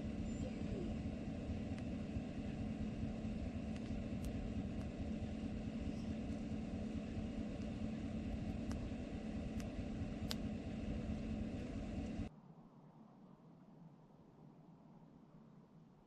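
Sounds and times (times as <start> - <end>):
engine rumble: 0.0 - 12.3
faint clicks: 3.2 - 6.6.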